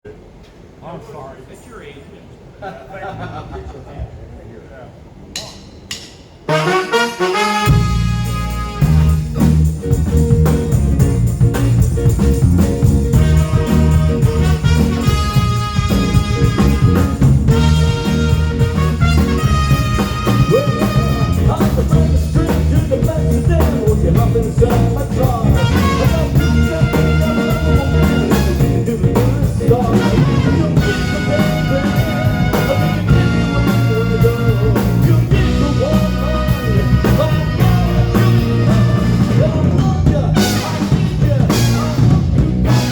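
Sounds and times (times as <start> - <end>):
loud music with singing: 20.2 - 42.9.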